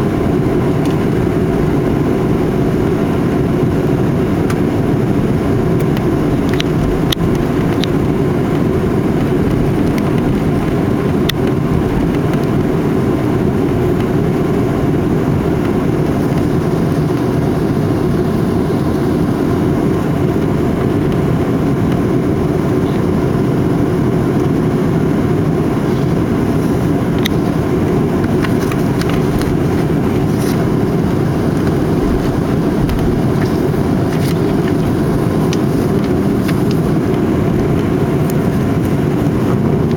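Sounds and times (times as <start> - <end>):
jet engine and cabin noise: 0.0 - 39.9.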